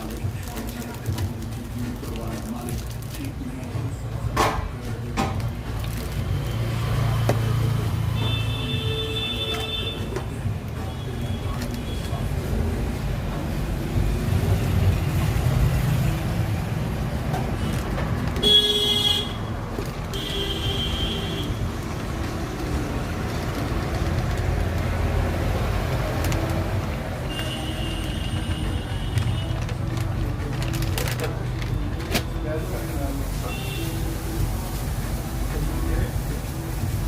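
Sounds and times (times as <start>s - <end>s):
road traffic rumble: 0.0s - 37.0s
vehicle horns honking: 8.1s - 10.2s, 18.4s - 19.5s, 20.1s - 21.7s, 27.3s - 29.6s, 33.4s - 34.1s.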